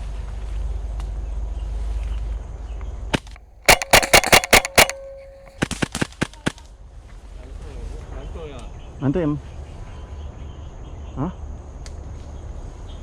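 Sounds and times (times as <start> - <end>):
airsoft guns firing: 3.7 - 5.5.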